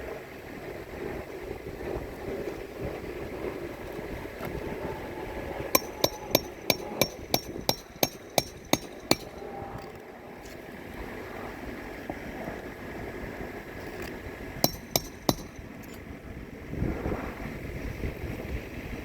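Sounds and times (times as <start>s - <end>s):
hammer striking nails: 5.8s - 9.4s, 14.6s - 16.0s.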